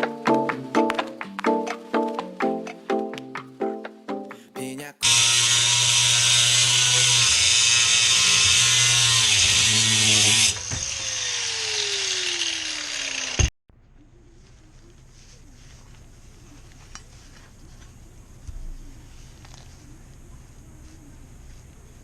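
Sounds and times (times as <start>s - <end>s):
power tool motor winding down: 5.0s - 13.5s.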